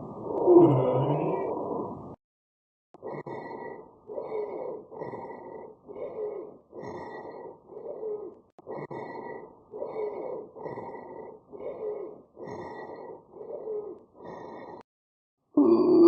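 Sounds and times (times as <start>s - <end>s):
wheezing breaths: 3.0s - 14.9s.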